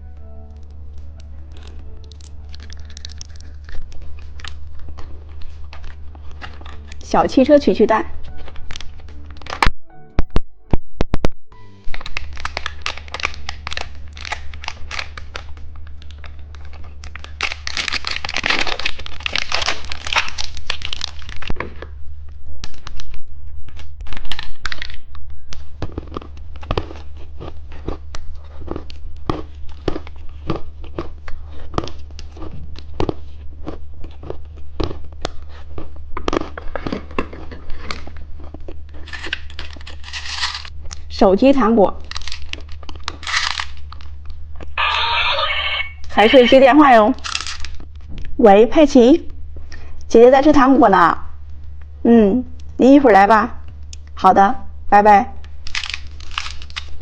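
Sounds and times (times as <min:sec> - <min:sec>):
steady low hum: 0:00.0 - 0:57.0
plastic packaging crinkling and tearing: 0:00.2 - 0:09.7, 0:11.6 - 0:41.1, 0:41.9 - 0:45.5, 0:47.2 - 0:48.3, 0:55.4 - 0:57.0.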